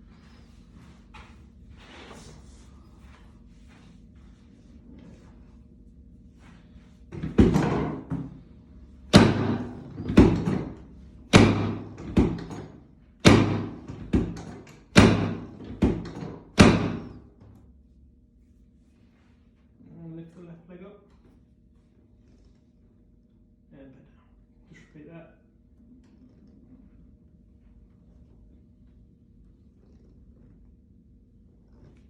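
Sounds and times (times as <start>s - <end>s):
heavy thuds on treatment table: 9.1s - 17.2s.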